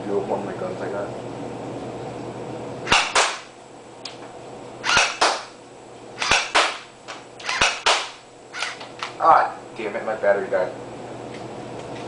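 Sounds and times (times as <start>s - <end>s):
airsoft pistol double snap: 2.9s - 3.5s, 6.2s - 8.2s.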